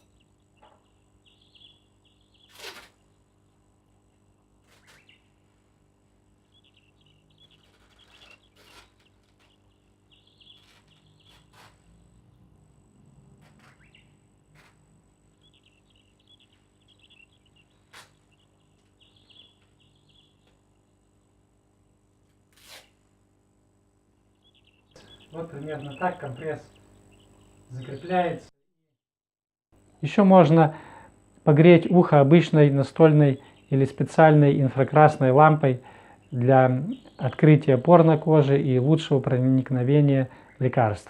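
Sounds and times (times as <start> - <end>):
small bird chirping: 0.0 - 3.7, 4.6 - 12.6, 13.4 - 22.0, 24.2 - 28.5, 34.5 - 39.3.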